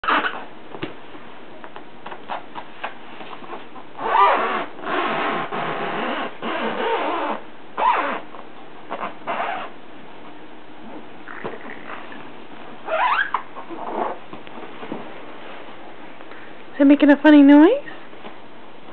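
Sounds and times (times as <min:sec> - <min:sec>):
scratchy scraping and squeaking: 0:12.8 - 0:14.2.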